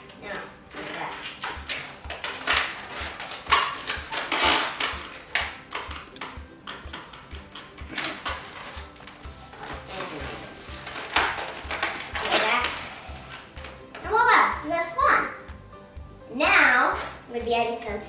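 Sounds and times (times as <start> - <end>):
balloon rubber squeaking: 4.2 - 4.9.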